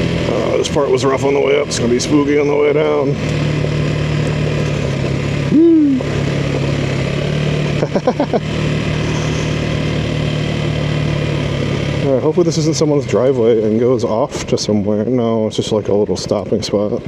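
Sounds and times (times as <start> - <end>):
motorcycle engine running: 0.0 - 17.0
loud rising and falling tone: 5.4 - 6.4
short wavering sounds: 5.5 - 6.2.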